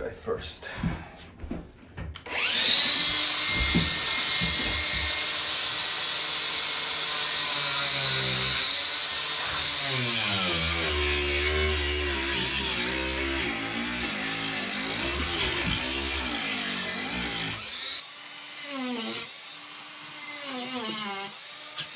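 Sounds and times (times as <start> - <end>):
power saw cutting wood floor: 2.2 - 21.9.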